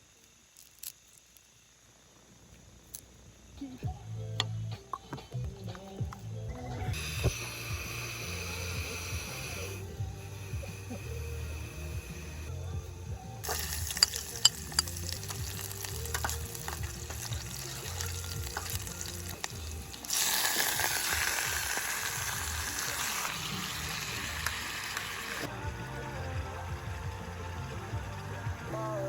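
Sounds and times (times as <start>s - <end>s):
soft background music: 3.6s - 29.0s
sizzling hiss with crackles: 6.9s - 29.0s.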